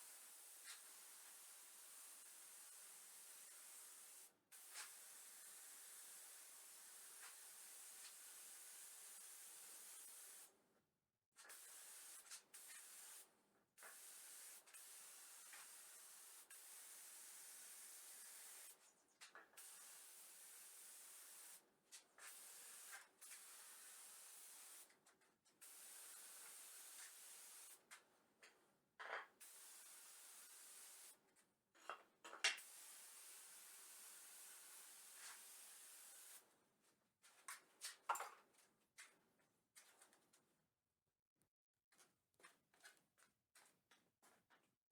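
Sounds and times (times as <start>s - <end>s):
faint steady hiss: 0.0s - 10.5s, 32.6s - 36.4s.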